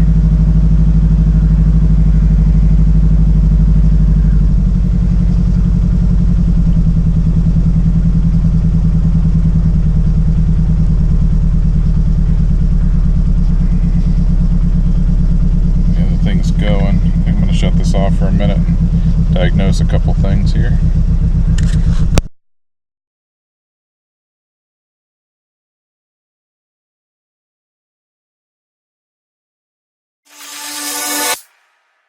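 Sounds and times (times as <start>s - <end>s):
car engine running roughly: 0.0s - 22.3s.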